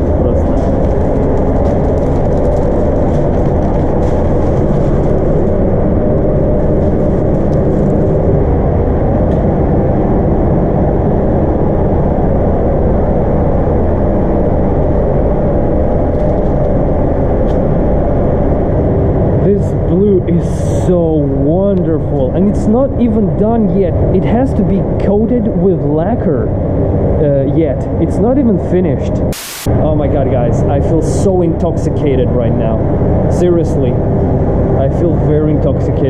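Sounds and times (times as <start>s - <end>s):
spray booth mechanical drone: 29.3s - 30.1s.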